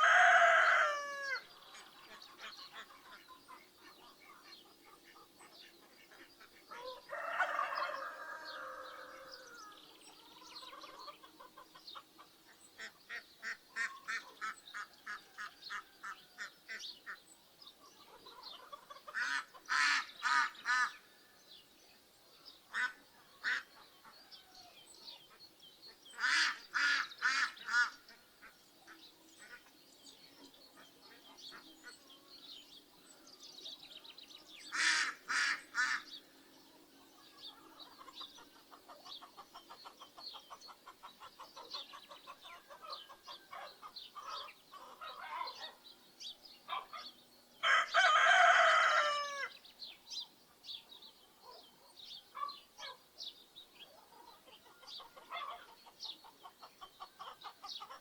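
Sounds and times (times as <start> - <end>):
rooster crowing: 0.0 - 1.4, 6.8 - 9.7, 47.6 - 49.6
ducks quacking: 1.7 - 7.3, 10.6 - 17.2, 18.1 - 21.0, 22.7 - 23.9, 26.2 - 29.8, 34.7 - 36.2, 54.0 - 58.0.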